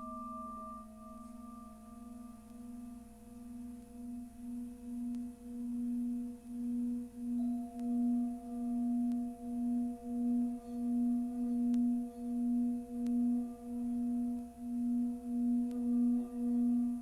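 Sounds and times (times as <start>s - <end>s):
singing bowl humming: 0.0s - 17.0s.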